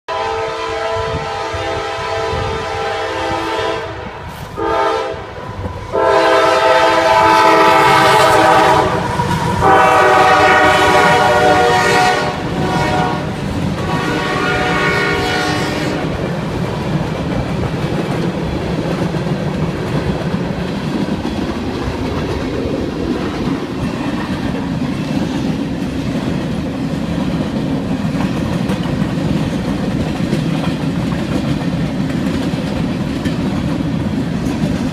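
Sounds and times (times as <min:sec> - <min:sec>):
locomotive air horn blasts: 0:00.1 - 0:16.2
freight cars rumbling and clacking: 0:16.2 - 0:34.9.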